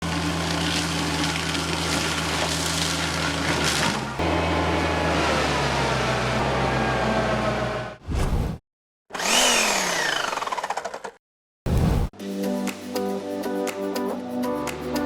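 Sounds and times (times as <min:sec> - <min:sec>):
heavy machinery engine running: 0:00.0 - 0:08.0
engine with rising pitch: 0:03.9 - 0:08.0, 0:09.2 - 0:11.2.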